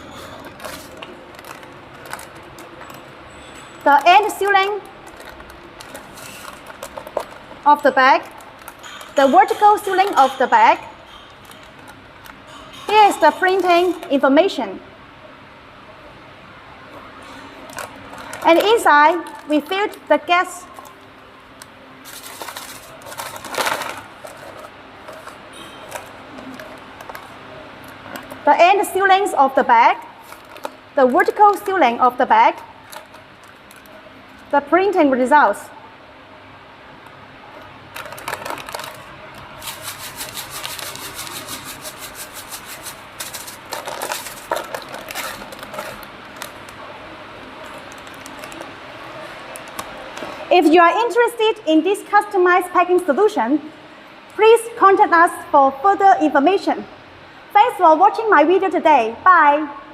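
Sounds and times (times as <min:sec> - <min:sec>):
plastic film crinkling: 0:00.2 - 0:10.4, 0:11.1 - 0:14.1, 0:17.4 - 0:28.5, 0:30.2 - 0:34.6, 0:37.6 - 0:50.5.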